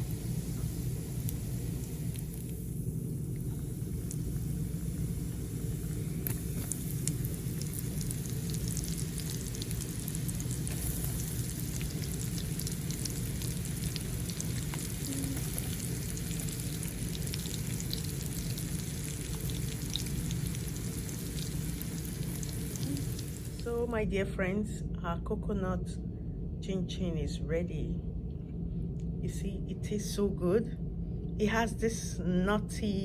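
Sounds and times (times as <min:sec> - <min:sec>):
dough sizzling in hot oil: 0:00.0 - 0:23.7
low steady rumble: 0:00.0 - 0:33.0.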